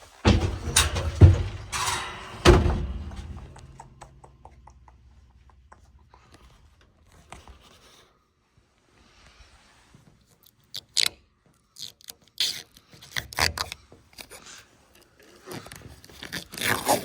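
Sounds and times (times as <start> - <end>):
heavy thunks: 0.0 - 5.2.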